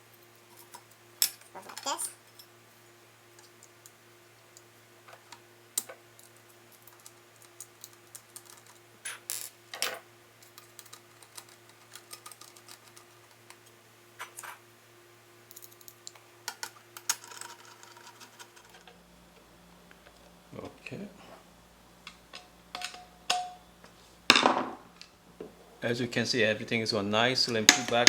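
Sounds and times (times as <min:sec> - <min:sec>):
faint steady hum: 0:00.0 - 0:28.0
metal parts clicking and scraping: 0:05.8 - 0:13.2, 0:15.5 - 0:18.9.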